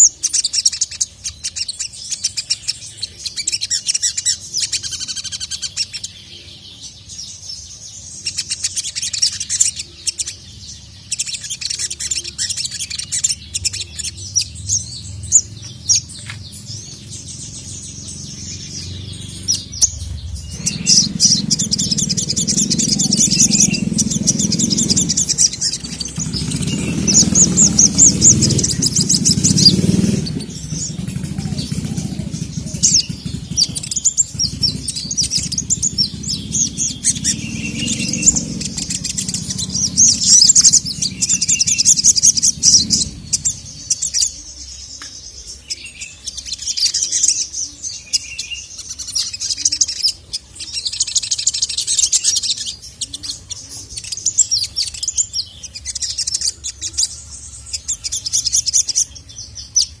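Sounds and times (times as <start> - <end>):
bird singing rattling chirps: 0.0 - 60.0
low rumble: 13.4 - 44.2.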